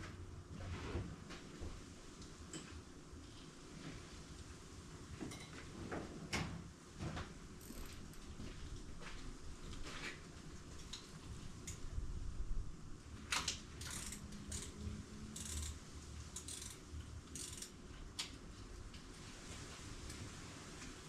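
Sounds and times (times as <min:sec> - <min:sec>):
socket ratchet clicking: 0:13.8 - 0:15.8, 0:16.4 - 0:17.8.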